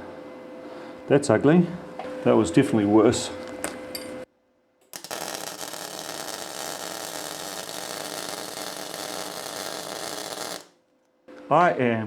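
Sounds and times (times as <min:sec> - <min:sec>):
welding arc crackling: 0:04.9 - 0:10.8.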